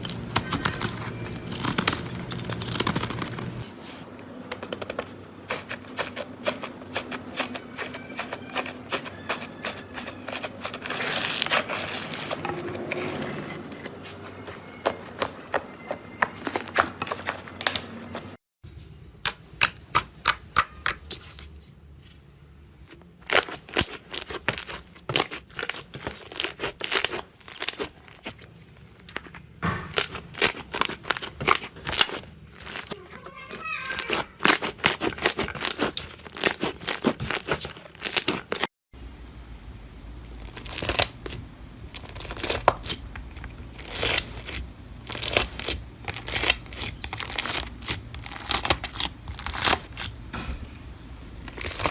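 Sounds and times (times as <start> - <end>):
slime popping and crackling: 23.2 - 28.4, 43.8 - 50.2, 51.4 - 51.9.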